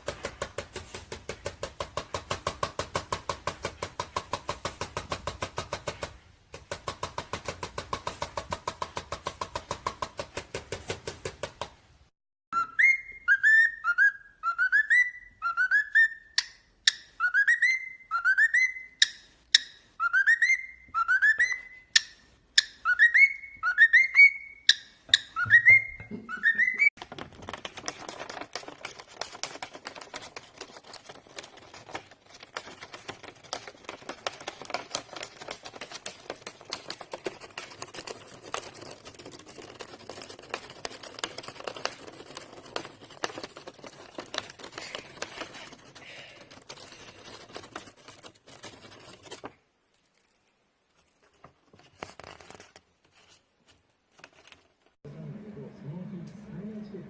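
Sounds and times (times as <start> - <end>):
parrot whistling: 12.6 - 19.0, 20.0 - 21.9, 22.7 - 26.9.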